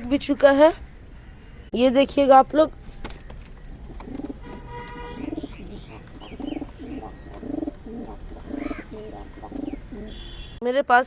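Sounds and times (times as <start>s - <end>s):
pigeons cooing: 3.3s - 10.6s
faint high chirps: 4.5s - 10.6s.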